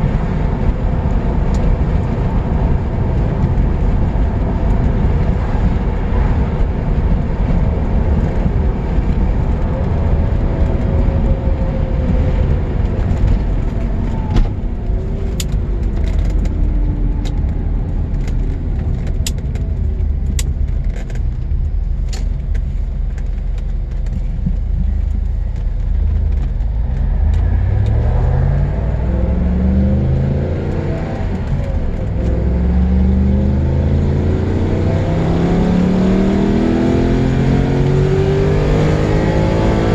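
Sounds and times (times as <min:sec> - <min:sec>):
car engine rumbling and accelerating: 0:00.0 - 0:39.9.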